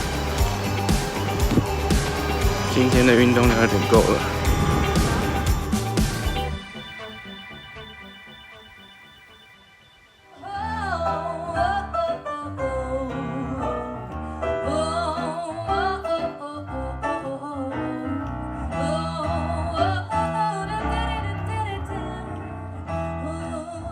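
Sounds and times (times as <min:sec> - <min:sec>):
song with singing and beat: 0:00.0 - 0:13.9.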